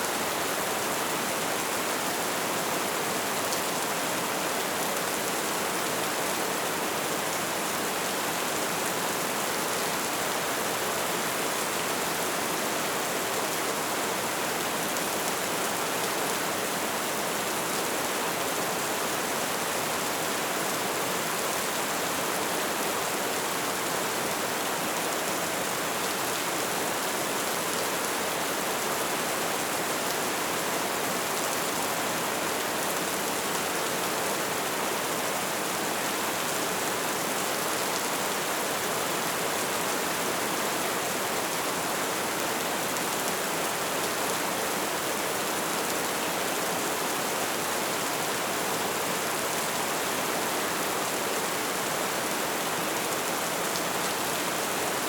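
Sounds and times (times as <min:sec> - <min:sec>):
steady rainfall hiss: 0:00.0 - 0:55.0.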